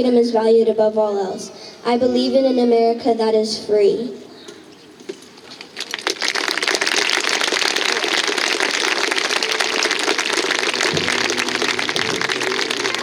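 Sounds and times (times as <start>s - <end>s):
audience applauding: 5.7s - 13.0s.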